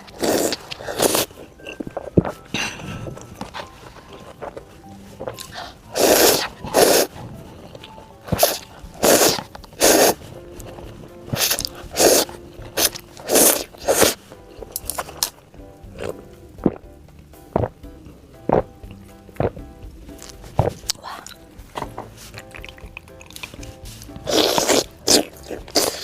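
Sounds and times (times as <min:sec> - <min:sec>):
quiet background music: 0:00.0 - 0:26.0
crunchy bites and chewing: 0:22.2 - 0:26.0.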